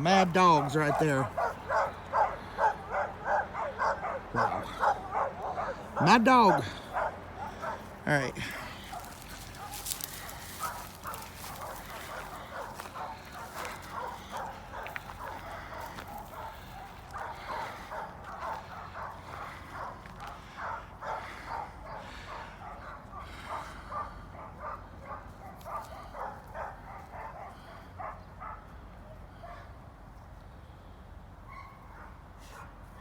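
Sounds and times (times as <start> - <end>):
dogs barking: 0.0 - 29.8, 31.4 - 33.0.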